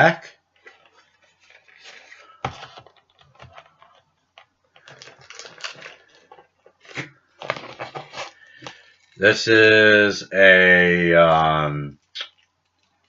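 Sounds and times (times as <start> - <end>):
puzzle cube clicking and rustling: 0.6 - 9.2.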